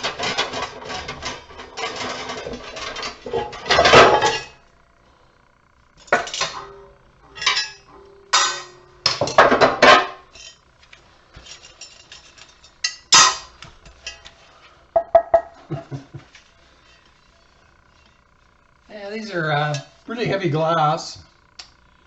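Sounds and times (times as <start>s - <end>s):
glass and metal clattering: 0.0s - 4.6s, 6.0s - 10.6s.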